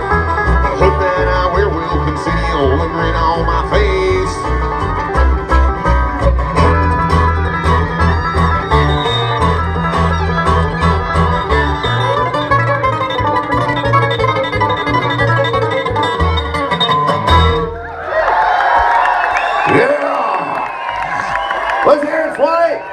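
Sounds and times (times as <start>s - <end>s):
fiddle: 0.0s - 17.9s
banjo rolls: 0.0s - 19.7s
guitar: 0.0s - 19.8s
upright bass: 0.0s - 19.9s.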